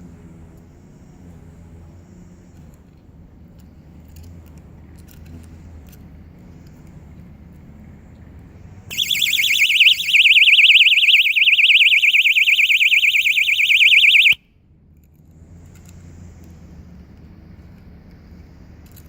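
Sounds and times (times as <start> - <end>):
warbling alarm siren: 8.9 - 14.4.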